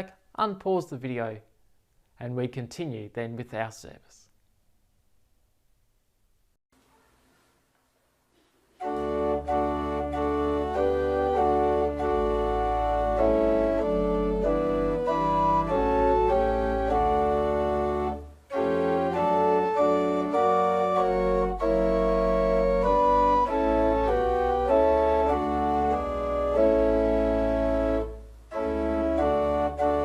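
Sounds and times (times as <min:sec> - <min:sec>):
organ playing hymn chords: 0:08.8 - 0:30.0.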